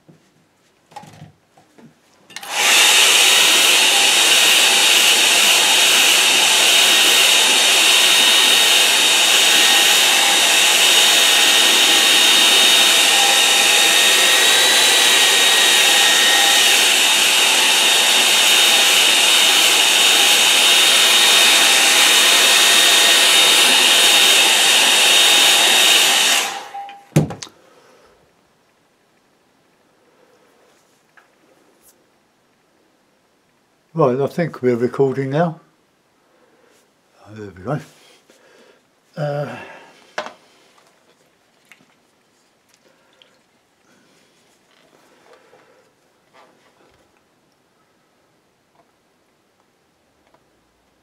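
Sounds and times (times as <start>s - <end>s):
hair dryer blowing: 2.3s - 27.5s
hair dryer set down thump: 27.1s - 27.5s.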